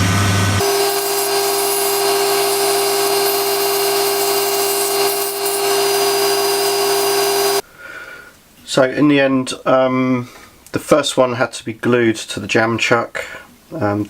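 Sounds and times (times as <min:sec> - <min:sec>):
wood lathe whine: 0:00.1 - 0:07.6
tool hissing on spinning wood: 0:00.6 - 0:07.6.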